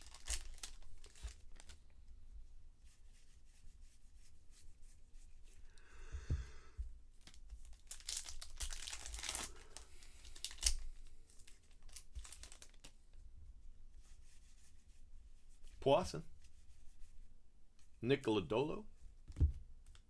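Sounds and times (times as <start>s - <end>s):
wrapper ripping: 0.0s - 1.8s, 7.2s - 13.0s
wrapper crinkling: 0.0s - 1.9s, 7.2s - 13.0s.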